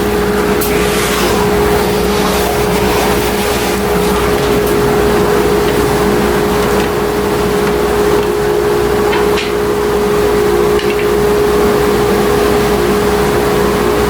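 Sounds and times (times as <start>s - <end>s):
bit cutting material: 0.0s - 7.8s
router spindle whine: 0.0s - 14.0s.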